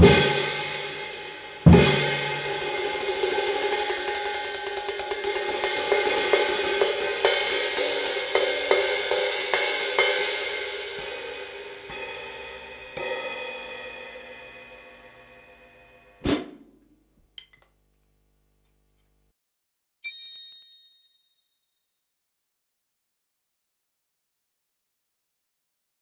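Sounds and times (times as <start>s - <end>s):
hi-hat cymbals struck: 0.0s - 16.8s
short sharp ding: 20.0s - 21.7s.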